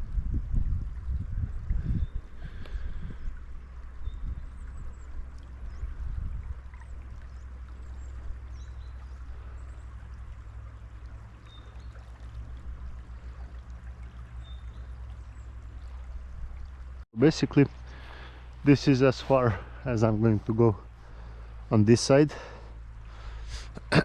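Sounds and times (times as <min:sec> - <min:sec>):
low rumble: 0:00.0 - 0:17.0
stream gurgling: 0:00.0 - 0:24.0.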